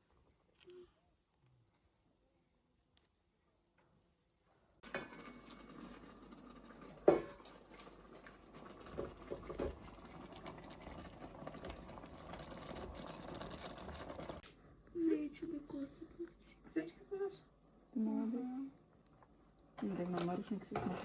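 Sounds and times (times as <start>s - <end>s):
water running: 4.8s - 14.4s.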